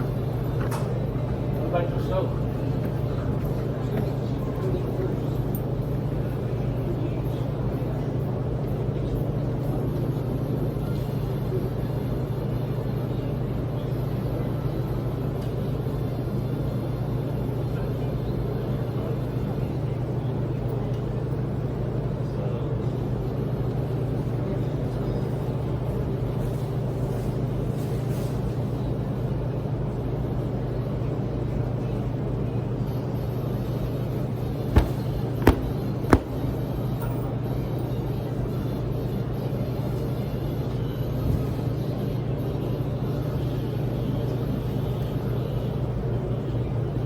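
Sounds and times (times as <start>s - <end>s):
laundry machines humming: 28.8s - 47.0s
sharp knocks: 34.8s - 36.5s.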